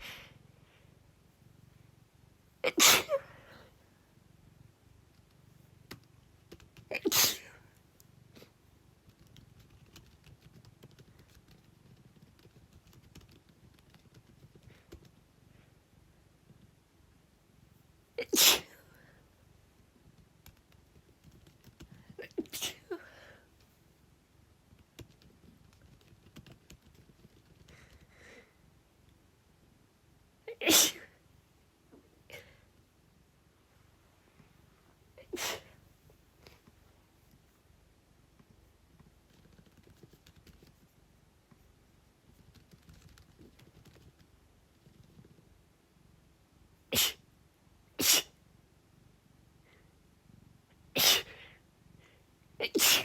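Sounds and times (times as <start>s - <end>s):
cat purring: 0.0s - 18.2s, 23.2s - 30.3s, 32.0s - 52.7s
typing on computer keyboard: 5.9s - 6.9s, 9.0s - 15.2s, 20.2s - 22.0s, 24.7s - 28.0s, 39.2s - 40.8s, 42.3s - 45.4s.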